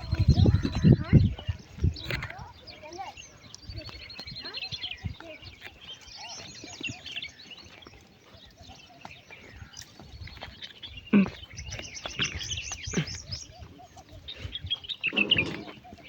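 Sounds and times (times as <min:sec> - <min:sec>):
small birds chirping: 0:00.0 - 0:16.0.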